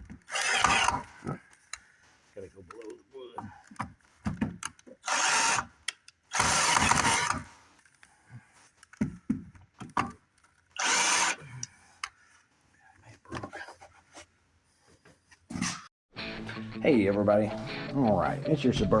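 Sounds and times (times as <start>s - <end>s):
power drill driving screws: 0.2s - 1.4s, 5.0s - 7.5s, 10.8s - 11.4s
knocks of wood and tools: 3.4s - 4.8s, 8.9s - 10.2s.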